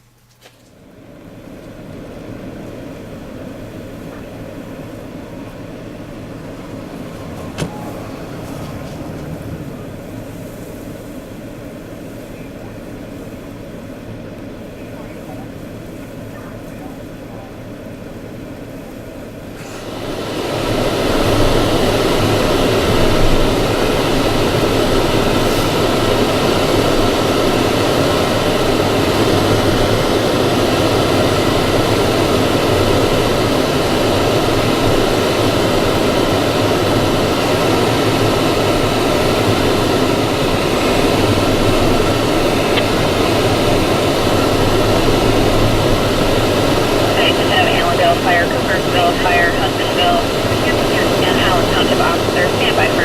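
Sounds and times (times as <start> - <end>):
blizzard wind on microphone: 19.4 - 53.0.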